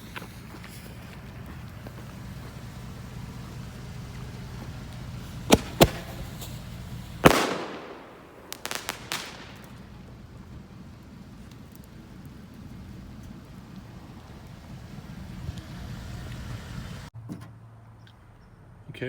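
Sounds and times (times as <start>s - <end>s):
small firework cracks: 0.1s - 14.9s
firework shell bangs: 5.2s - 10.1s.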